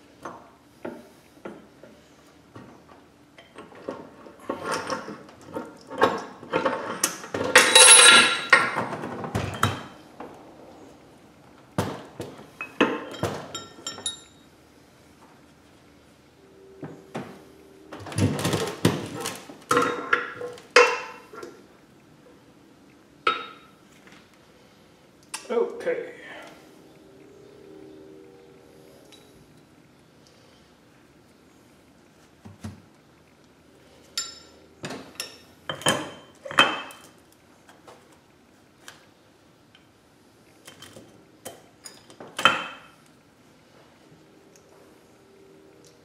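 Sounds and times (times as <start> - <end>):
steel parts clanking: 6.0 - 8.8
metallic ring: 7.5 - 8.8, 12.6 - 14.5, 34.2 - 34.6.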